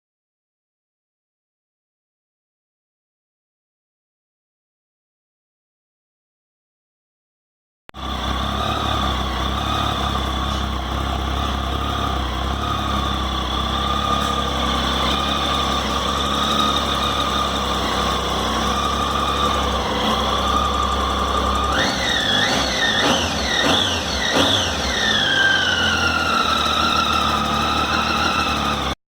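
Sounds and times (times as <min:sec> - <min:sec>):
motorcycle engine idling: 0:08.0 - 0:29.0.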